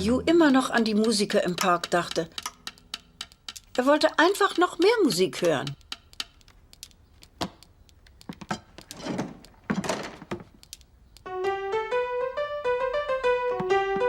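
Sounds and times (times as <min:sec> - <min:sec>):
bright melody of single notes: 0:00.0 - 0:02.0.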